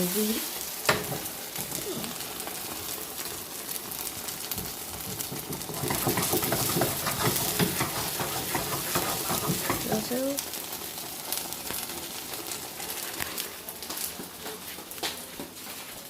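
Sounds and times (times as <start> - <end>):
pancakes sizzling in a pan: 0.0 - 16.0
utensil scraping a pan: 5.2 - 10.1.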